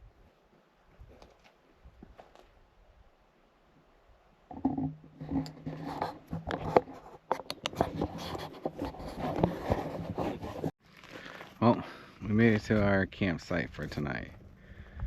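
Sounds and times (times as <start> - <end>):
objects knocking and scraping: 4.5 - 10.7.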